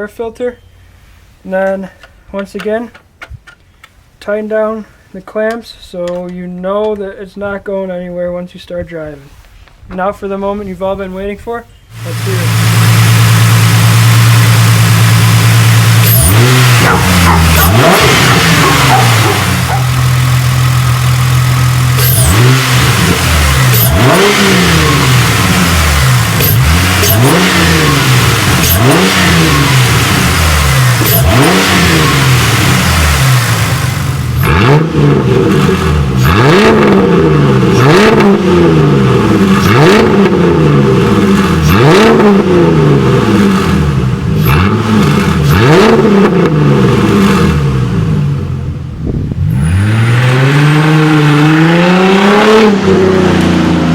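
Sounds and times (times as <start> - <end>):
car engine revving: 11.9 - 53.9.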